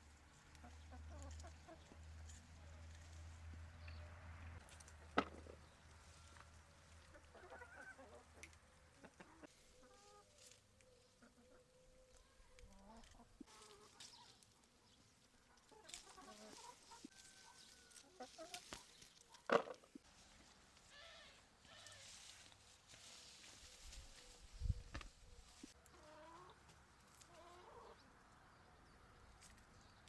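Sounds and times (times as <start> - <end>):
chickens clucking: 0.3 - 2.1, 4.9 - 20.9, 21.7 - 28.2.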